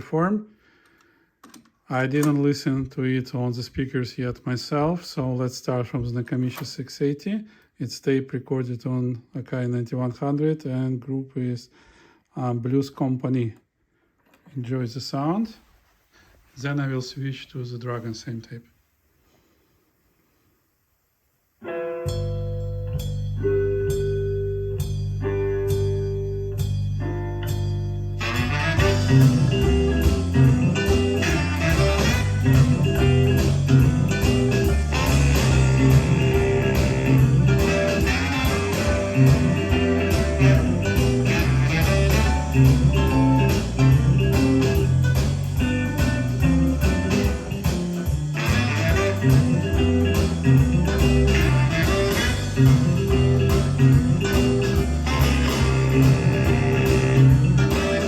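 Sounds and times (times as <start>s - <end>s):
blues band with guitar: 21.6s - 58.0s.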